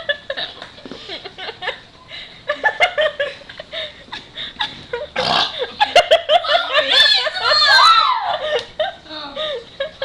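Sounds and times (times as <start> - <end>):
girls laughing and giggling: 0.0 - 10.0.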